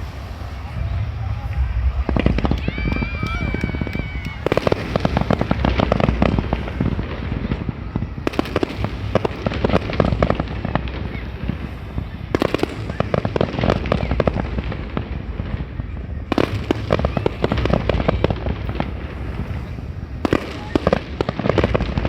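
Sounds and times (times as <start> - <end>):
fireworks bangs and crackling: 0.0 - 22.0.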